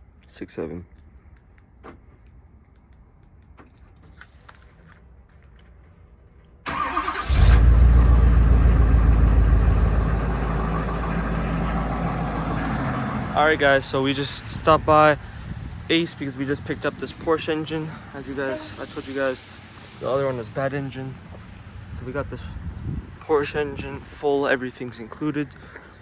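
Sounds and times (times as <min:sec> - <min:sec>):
car engine cranking and starting: 0:06.7 - 0:13.8
engine rumbling: 0:06.7 - 0:15.4.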